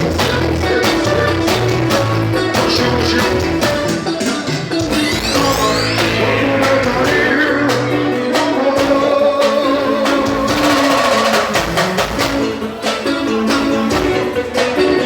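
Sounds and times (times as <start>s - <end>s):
plucked guitar melody: 0.0s - 10.7s, 11.6s - 15.0s
percussion strikes: 0.0s - 15.0s.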